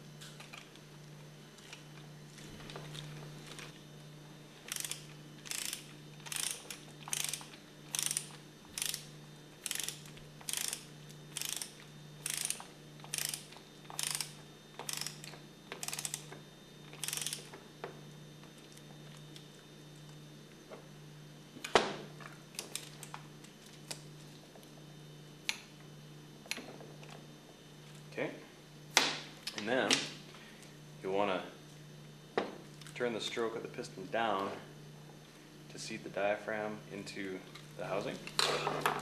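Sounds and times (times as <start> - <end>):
steady low hum: 0.0 - 39.0
ratchet wrench clicking: 4.7 - 15.2, 15.8 - 16.2, 17.0 - 17.5.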